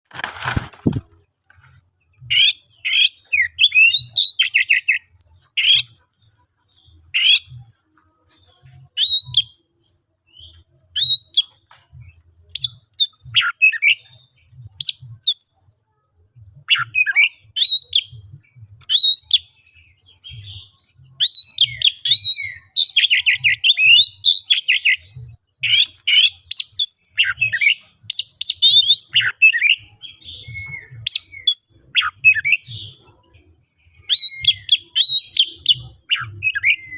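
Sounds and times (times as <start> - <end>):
songbird whistles and trills: 2.2 - 5.9, 8.9 - 11.6, 12.5 - 15.6, 16.7 - 33.3, 34.0 - 36.9.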